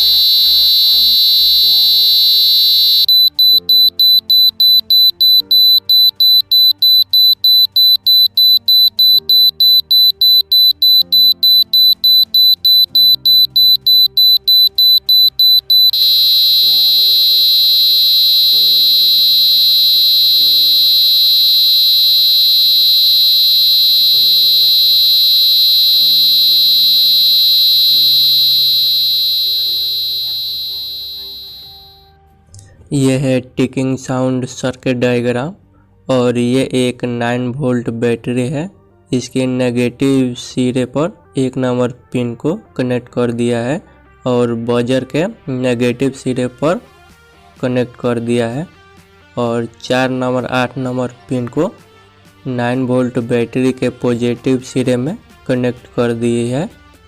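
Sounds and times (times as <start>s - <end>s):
buzzer shrill tone and beeping: 0.0s - 32.1s.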